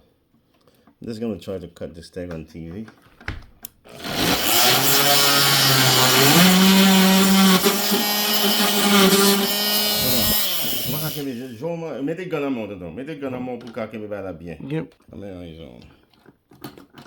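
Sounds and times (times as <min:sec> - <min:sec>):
oscillating multi-tool cutting: 0:03.9 - 0:11.6.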